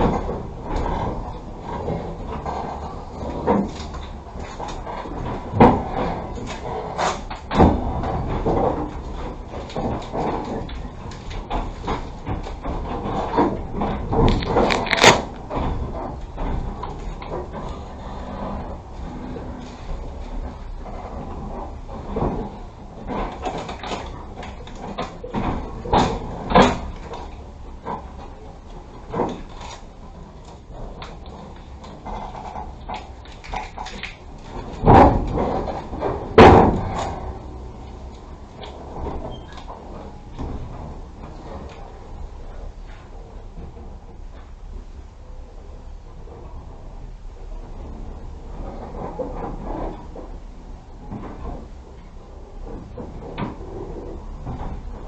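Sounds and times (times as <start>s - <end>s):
sharp clunks and knocks: 0.0s - 29.9s, 30.6s - 41.9s
train carriage low rumble: 0.0s - 55.0s.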